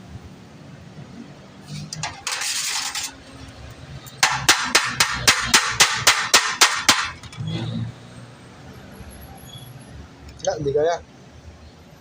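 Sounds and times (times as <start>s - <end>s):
hammer tapping on metal: 4.2s - 7.3s.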